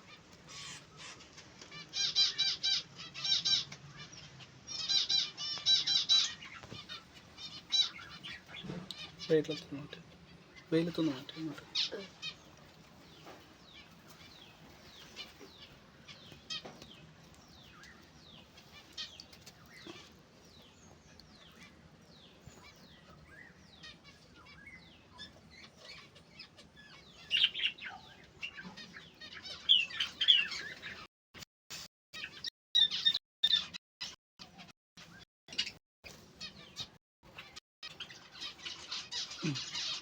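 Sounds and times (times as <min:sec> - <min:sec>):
finches chirping: 0:02.0 - 0:31.1.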